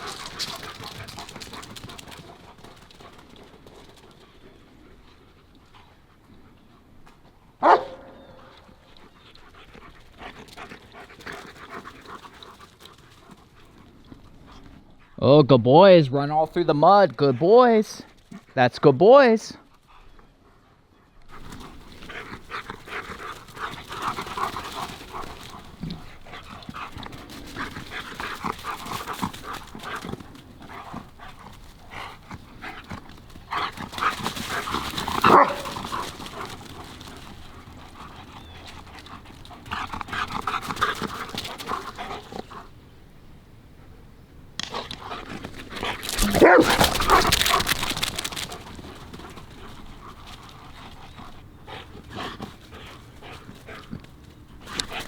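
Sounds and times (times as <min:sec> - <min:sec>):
dogs growling and barking: 0:00.0 - 0:03.2, 0:21.3 - 0:42.7, 0:44.6 - 0:55.0.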